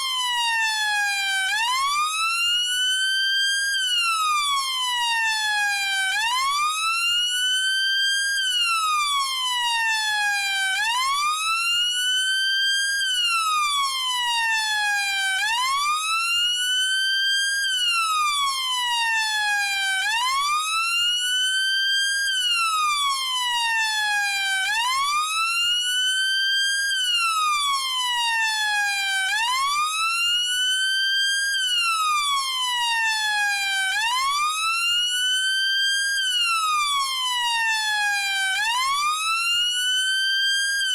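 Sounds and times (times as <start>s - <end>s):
police car siren wailing: 4.4s - 6.7s, 13.3s - 16.4s, 17.9s - 21.0s, 22.6s - 25.6s, 26.6s - 30.4s, 31.1s - 40.9s.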